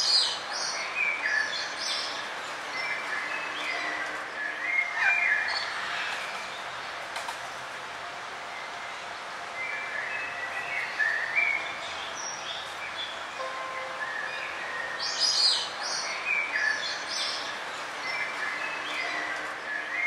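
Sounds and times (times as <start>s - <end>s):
songbirds chirping: 0.0s - 20.0s.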